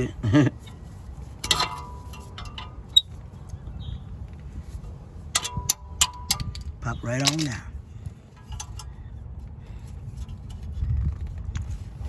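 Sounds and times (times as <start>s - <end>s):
metal tools clicking and clinking: 1.4s - 3.1s, 5.3s - 7.7s.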